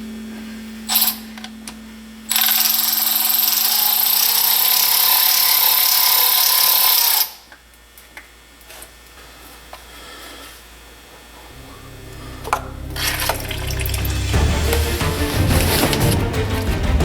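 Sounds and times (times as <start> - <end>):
handheld power tool running: 2.3 - 7.4.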